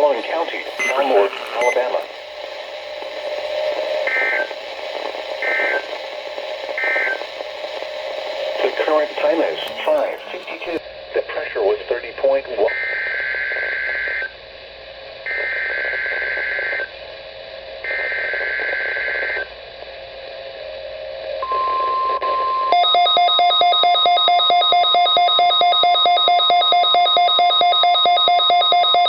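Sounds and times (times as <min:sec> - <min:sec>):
rapid electronic beeping: 0:00.0 - 0:10.8
steady warning alarm tone: 0:00.0 - 0:10.8
warbling digital data bursts: 0:00.0 - 0:10.8.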